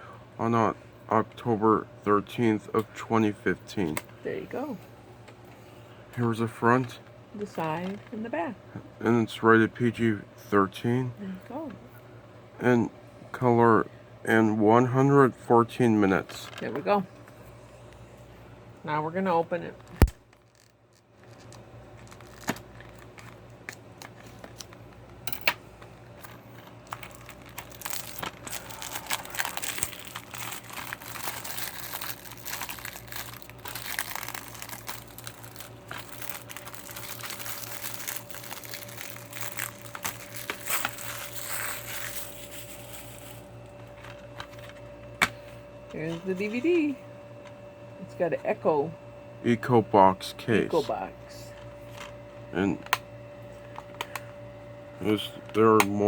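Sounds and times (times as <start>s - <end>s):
plastic wrapping crinkling: 19.9s - 24.9s, 26.2s - 43.5s.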